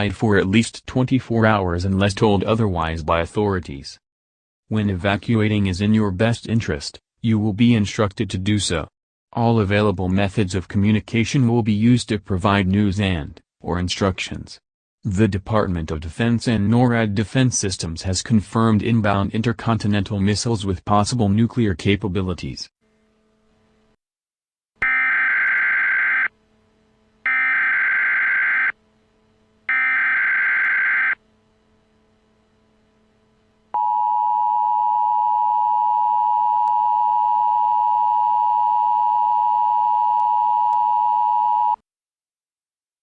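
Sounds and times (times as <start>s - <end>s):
screeching digital data bursts: 24.8s - 26.3s, 27.3s - 28.7s, 29.7s - 31.2s
two-tone attention signal: 24.8s - 26.3s, 29.7s - 31.2s.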